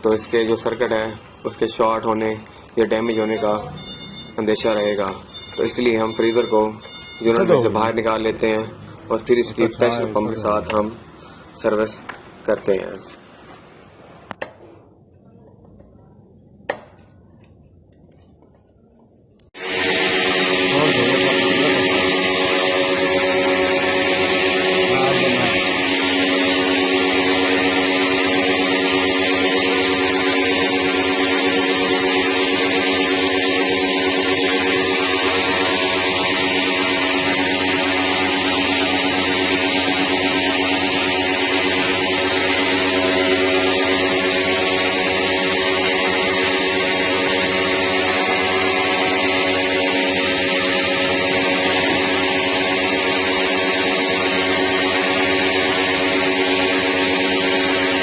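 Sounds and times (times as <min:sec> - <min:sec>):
pressure pump humming: 0:00.0 - 0:12.5, 0:19.6 - 0:58.0
water jet hissing: 0:19.6 - 0:58.0.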